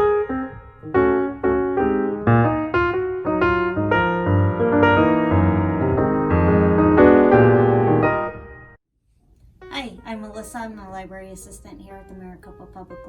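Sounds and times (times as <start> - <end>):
keyboard plucked notes: 0.0 - 8.8.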